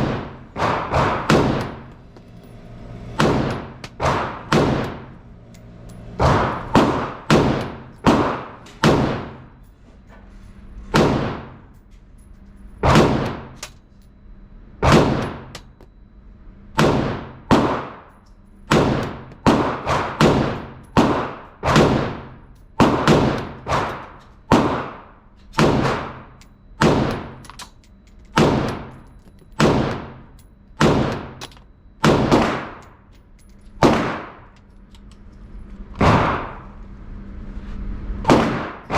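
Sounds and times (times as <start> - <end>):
rifle firing single shots: 6.2 - 9.4, 18.7 - 22.2, 32.0 - 32.8, 33.8 - 34.4.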